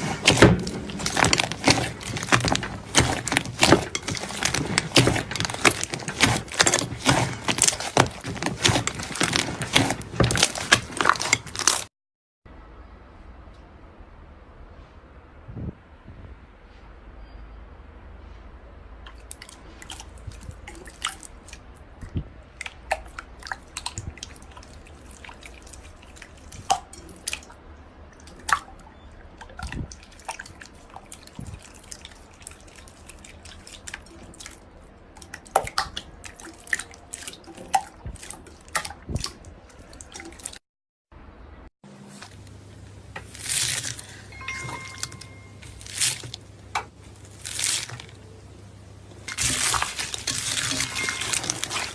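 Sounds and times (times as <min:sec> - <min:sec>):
slime squelches: 0:00.0 - 0:11.9, 0:19.1 - 0:40.6, 0:42.0 - 0:51.9
slime squished by hand: 0:00.0 - 0:11.9, 0:43.2 - 0:48.4, 0:49.2 - 0:51.9.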